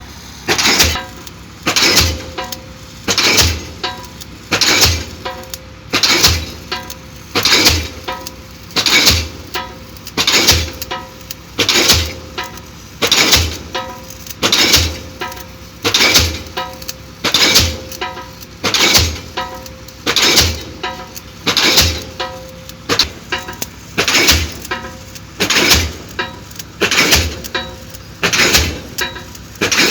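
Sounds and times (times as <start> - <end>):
pile hammer strikes: 0.5 - 29.9.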